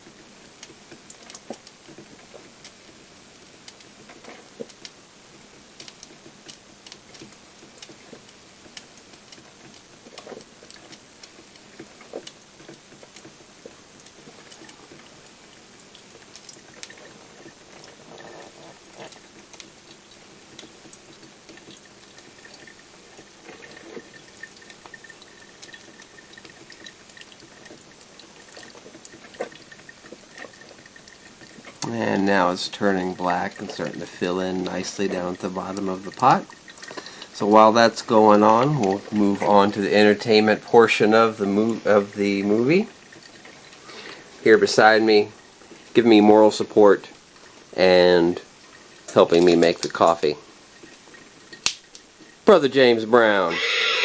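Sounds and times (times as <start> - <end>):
coffee dripping into carafe: 5.8 - 53.4.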